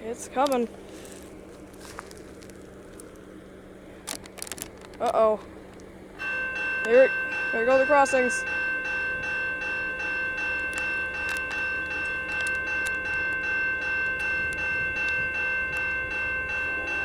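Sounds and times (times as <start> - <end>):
railroad crossing bells ringing: 6.1 - 17.0.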